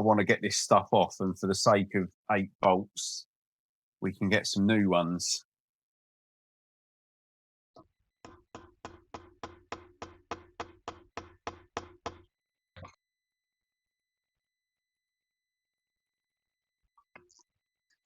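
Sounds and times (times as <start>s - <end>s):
evenly spaced knocks: 8.2s - 12.3s.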